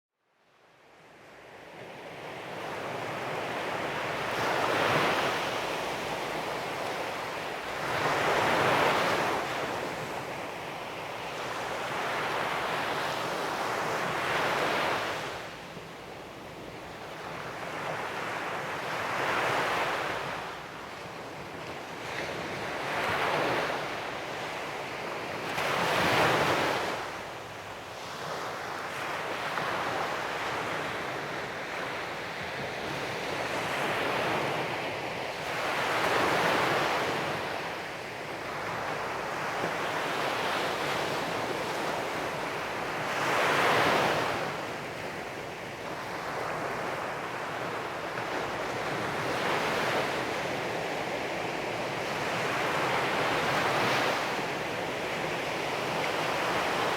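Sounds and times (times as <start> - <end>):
waves breaking on beach: 16.6 - 56.9.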